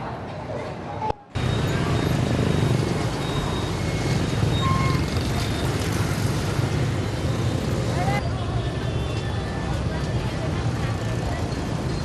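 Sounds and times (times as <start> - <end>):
traffic engines rumbling: 0.0 - 12.0
high beeps: 1.4 - 5.7.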